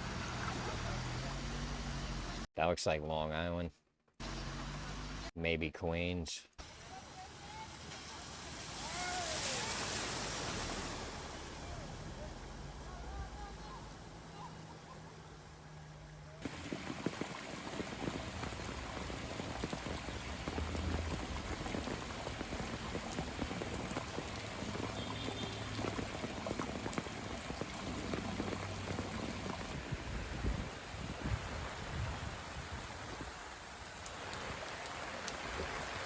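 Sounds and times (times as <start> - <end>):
steady rain falling: 7.5 - 11.9, 16.4 - 36.0.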